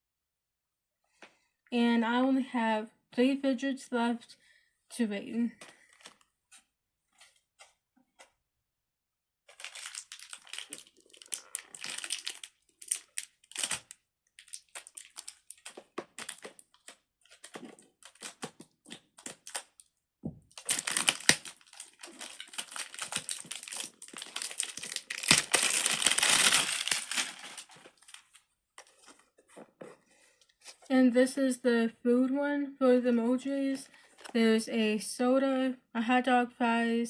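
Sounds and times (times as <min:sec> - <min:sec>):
packaging crinkling: 0:09.5 - 0:19.9, 0:20.5 - 0:29.4.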